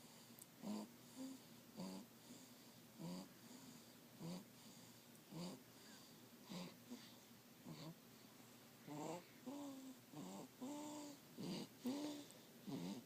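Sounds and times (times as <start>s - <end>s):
baby snoring: 0.6s - 8.0s, 8.8s - 13.0s.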